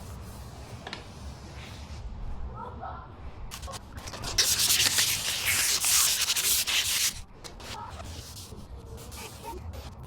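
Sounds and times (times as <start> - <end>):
sandpaper rasping: 3.5 - 9.6.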